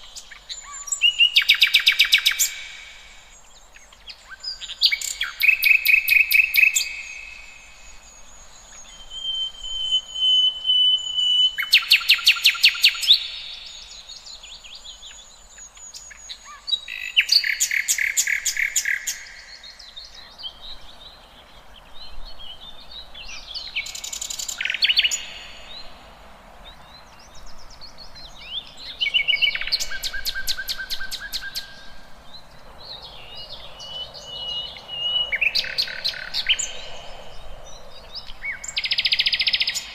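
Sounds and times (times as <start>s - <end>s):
bird whistles and chirps: 8.8s - 13.3s.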